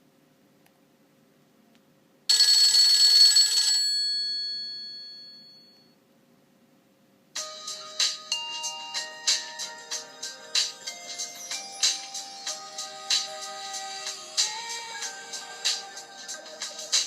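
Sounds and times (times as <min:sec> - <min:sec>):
phone ringtone: 0:02.3 - 0:06.0, 0:07.4 - 0:17.0.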